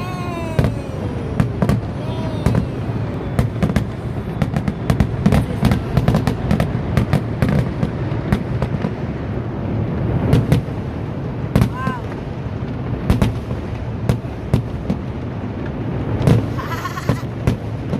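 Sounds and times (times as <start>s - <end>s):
firework whistle gliding down: 0.0s - 5.8s
fireworks bangs and crackles: 0.0s - 17.9s.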